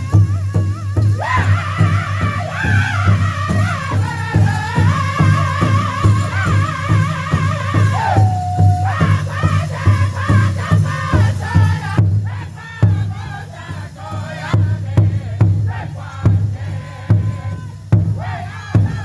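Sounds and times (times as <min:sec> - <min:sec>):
big drum steady beat: 0:00.0 - 0:19.0
voices singing in chorus: 0:00.0 - 0:19.0.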